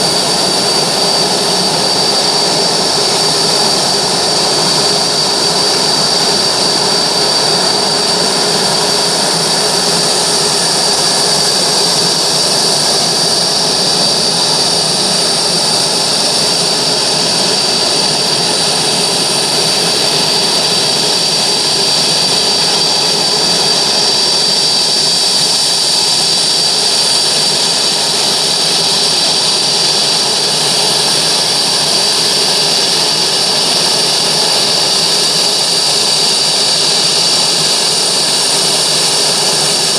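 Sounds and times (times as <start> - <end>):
jet engines running: 0.0 - 39.9.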